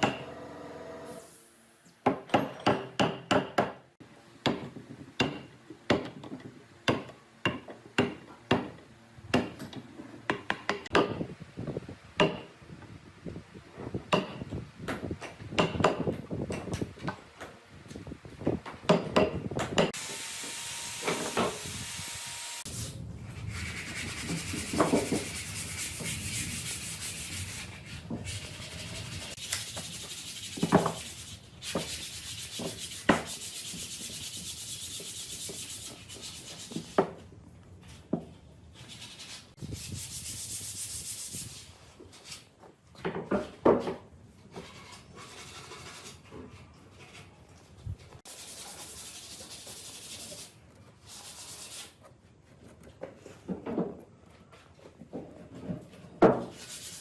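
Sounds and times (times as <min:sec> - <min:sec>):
wood being sanded: 0:20.0 - 0:36.9, 0:48.3 - 0:50.5, 0:56.5 - 0:57.0.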